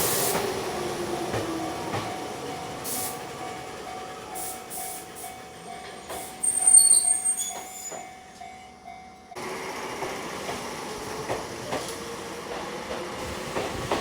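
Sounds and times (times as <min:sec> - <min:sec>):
electric train running on track: 0:00.0 - 0:14.0
level-crossing warning bell: 0:01.0 - 0:09.5
high wheel squeal: 0:06.2 - 0:08.2.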